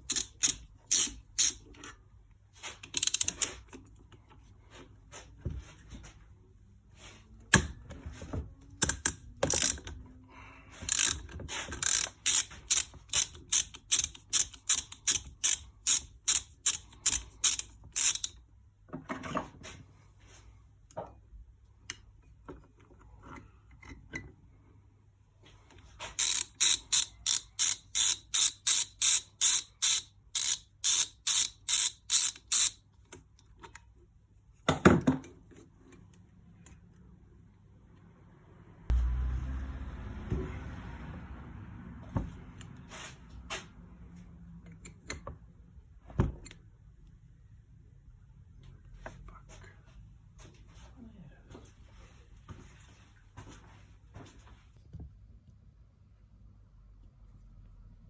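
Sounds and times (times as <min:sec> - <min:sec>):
socket ratchet wrench clicking: 0:00.0 - 0:01.6, 0:02.8 - 0:03.5, 0:08.8 - 0:10.0, 0:10.9 - 0:18.4, 0:26.2 - 0:32.8.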